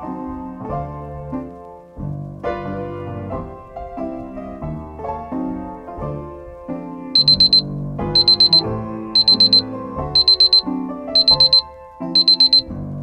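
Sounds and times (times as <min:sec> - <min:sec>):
alarm clock beeping: 0:07.2 - 0:07.6, 0:08.2 - 0:09.6, 0:10.2 - 0:10.6, 0:11.2 - 0:11.6, 0:12.2 - 0:12.7
piano music: 0:07.2 - 0:12.6.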